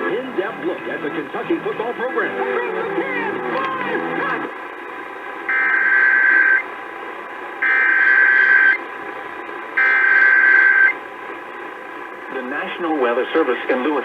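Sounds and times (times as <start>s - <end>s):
steady radio hiss: 0.0s - 14.0s
buzzy data bursts over radio: 5.5s - 6.6s, 7.6s - 8.8s, 9.8s - 11.0s.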